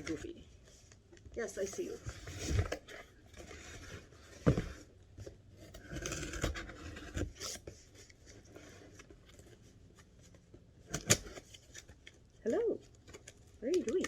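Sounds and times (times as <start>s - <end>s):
cardboard box scraping: 1.8s - 4.9s, 5.5s - 8.9s.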